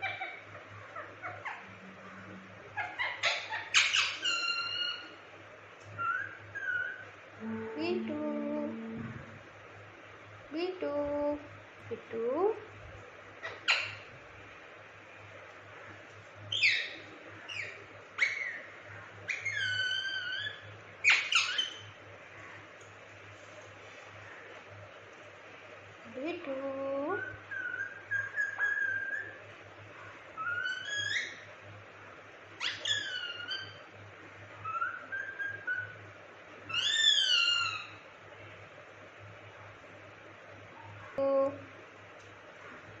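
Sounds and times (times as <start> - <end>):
parrot calling: 0.0 - 1.8, 2.7 - 5.2, 6.0 - 7.2, 13.4 - 14.1, 16.5 - 22.0, 27.2 - 29.4, 30.4 - 31.6, 32.6 - 33.9, 34.6 - 36.1, 36.7 - 38.1.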